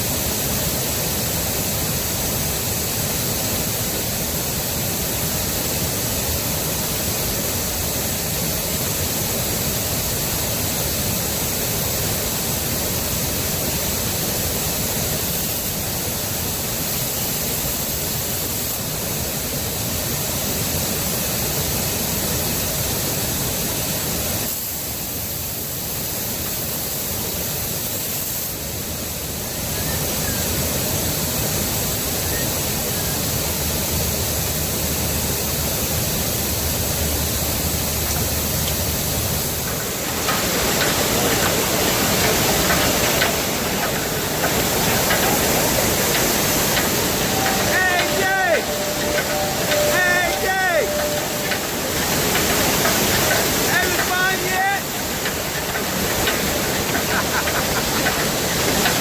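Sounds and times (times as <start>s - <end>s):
loud rushing noise: 37.2s - 59.0s.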